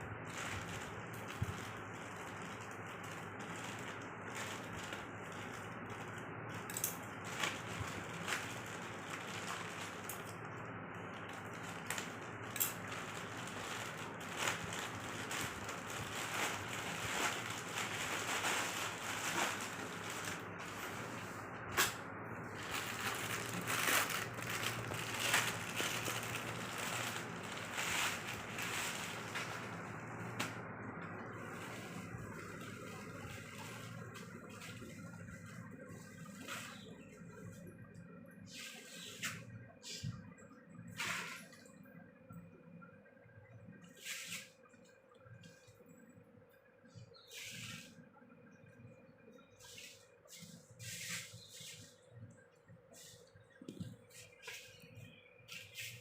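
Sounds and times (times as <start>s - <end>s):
packaging crinkling: 0.2s - 21.2s, 21.8s - 35.1s.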